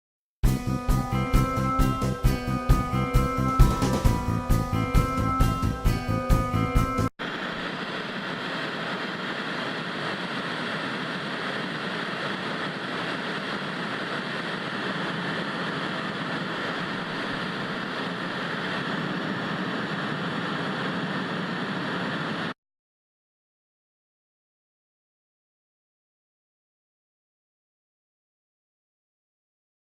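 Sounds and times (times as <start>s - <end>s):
television static hiss: 7.2s - 22.5s.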